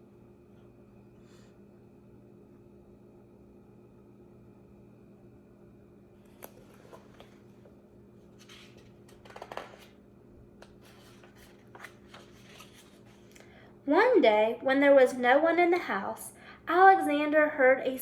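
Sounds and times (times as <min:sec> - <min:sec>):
low steady hum: 0:00.0 - 0:18.0
book pages turning: 0:06.3 - 0:10.0, 0:10.6 - 0:13.4.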